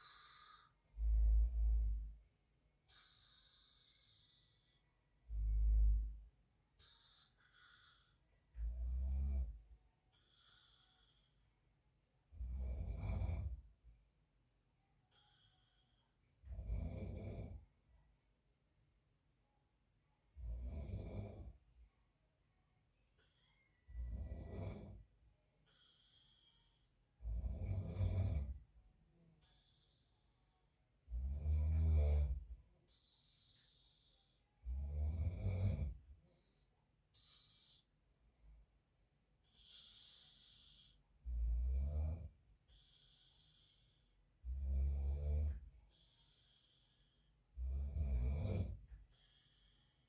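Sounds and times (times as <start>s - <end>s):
soft airy breath: 0.0s - 12.3s, 13.4s - 16.7s, 21.4s - 31.2s, 32.3s - 35.0s, 35.7s - 41.4s, 42.3s - 44.6s, 45.5s - 47.7s, 48.4s - 50.0s
man snoring: 12.3s - 13.6s, 16.5s - 17.6s, 20.4s - 21.6s, 24.0s - 25.0s, 27.2s - 28.6s, 31.1s - 32.5s, 33.4s - 36.0s, 39.6s - 43.8s, 44.4s - 45.7s, 47.6s - 48.9s.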